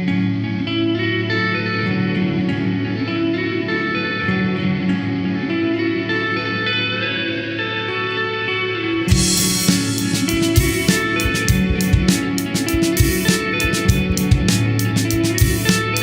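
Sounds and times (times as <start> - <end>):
plucked guitar notes: 0.0 - 16.0
steady low bass: 9.1 - 16.0.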